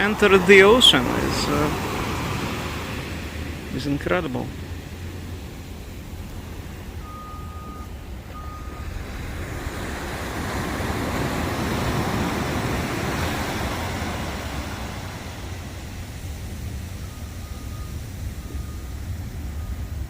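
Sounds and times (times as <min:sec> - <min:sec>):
steady low rumble: 0:00.0 - 0:20.0
vehicle passing by: 0:00.0 - 0:20.0
faint high beep: 0:07.0 - 0:09.0.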